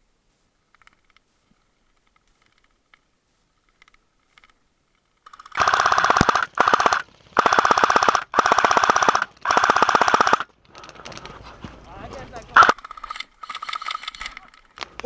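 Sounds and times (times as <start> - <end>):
faint clicks: 0.7 - 6.2
airsoft gun firing bursts: 5.3 - 10.5, 12.6 - 12.8.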